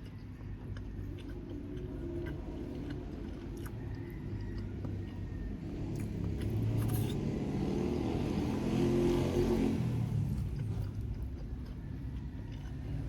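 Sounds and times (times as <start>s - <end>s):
vehicle engine passing: 5.6s - 13.0s.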